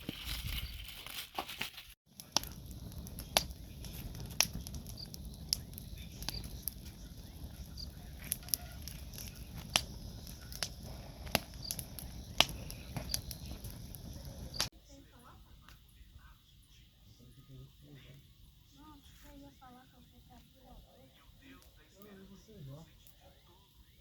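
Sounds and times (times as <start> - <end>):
campfire crackling: 1.6 - 16.6, 17.9 - 24.0
wind and flames rumbling: 2.1 - 14.7.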